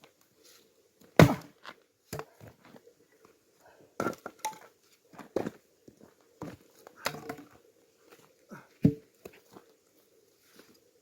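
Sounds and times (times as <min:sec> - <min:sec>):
axe striking log: 0:01.2 - 0:02.3.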